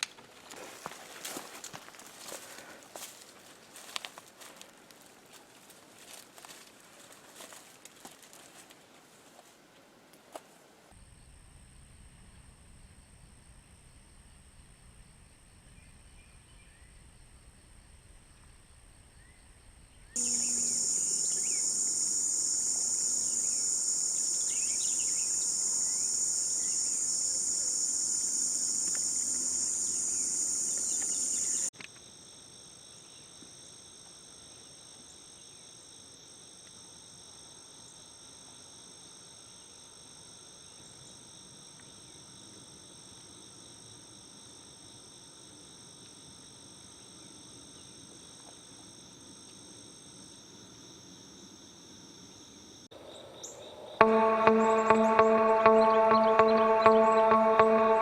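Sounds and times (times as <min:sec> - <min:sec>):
loud high-pitched insect drone: 0:20.2 - 0:31.7
insects trilling: 0:20.2 - 0:31.8.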